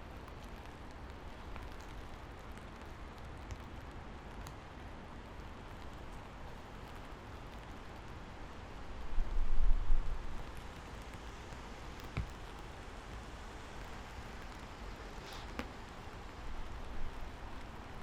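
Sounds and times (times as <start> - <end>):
steady rain falling: 0.0 - 18.0.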